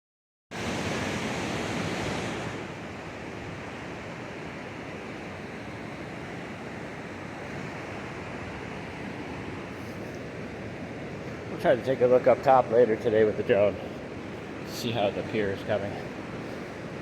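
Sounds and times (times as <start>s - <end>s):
ocean surf washing on beach: 0.5s - 17.0s.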